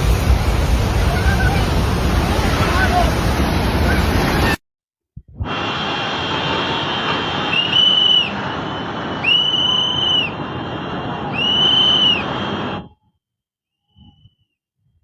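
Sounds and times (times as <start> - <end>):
continuous rushing noise: 0.0 - 4.6, 5.4 - 12.9
high steady whistle tones: 5.5 - 14.6.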